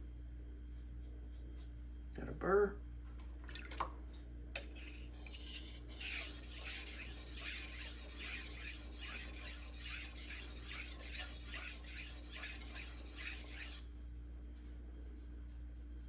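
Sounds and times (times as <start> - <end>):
knife blade rasping on whetstone: 5.2 - 13.9.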